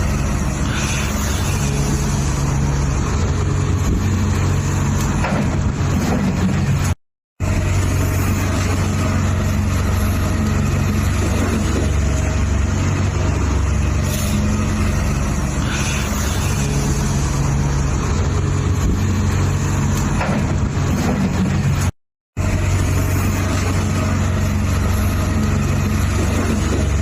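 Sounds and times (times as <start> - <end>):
toy excavator motors droning: 0.0 - 5.2, 6.8 - 20.2.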